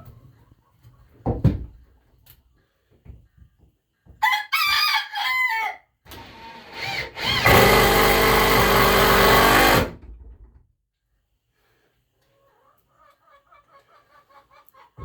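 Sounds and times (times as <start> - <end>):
rooster crowing: 4.2 - 5.9
power drill running: 6.1 - 10.0.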